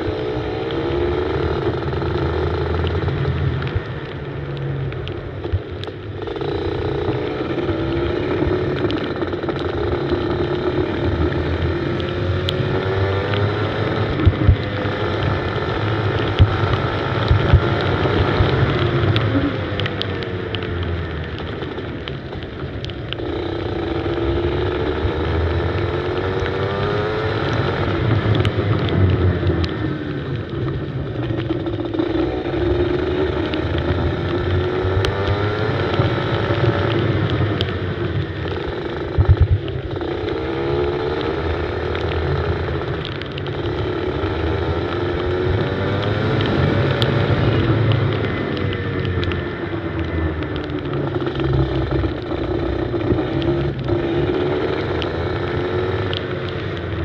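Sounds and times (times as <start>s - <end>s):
steady rush of noise: 0.0s - 57.0s
kart engine revving: 23.1s - 57.0s.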